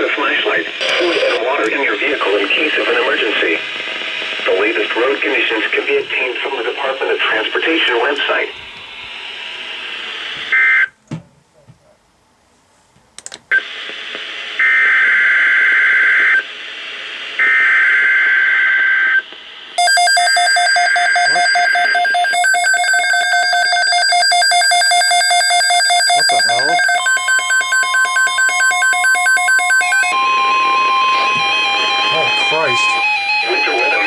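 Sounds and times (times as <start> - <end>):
radio hiss: 0.0 - 10.9, 13.5 - 19.8, 26.2 - 27.0, 30.1 - 34.0.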